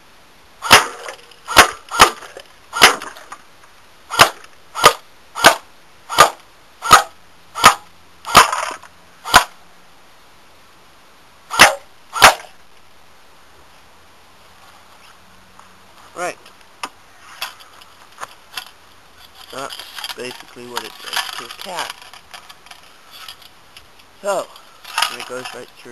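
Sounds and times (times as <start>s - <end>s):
bb gun shots: 0.6s - 3.2s, 4.1s - 9.6s, 11.5s - 12.5s.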